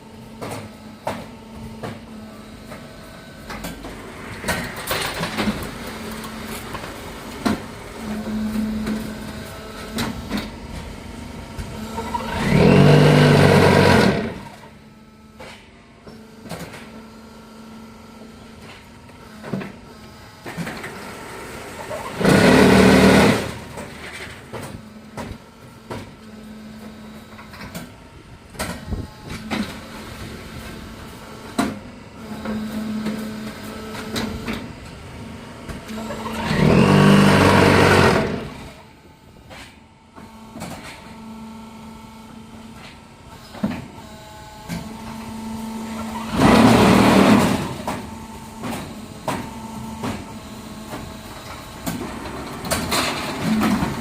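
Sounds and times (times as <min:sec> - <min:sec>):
machine humming: 0:01.0 - 0:15.3, 0:32.2 - 0:39.2
loud vibrating buzzes: 0:11.1 - 0:15.2, 0:35.9 - 0:38.8.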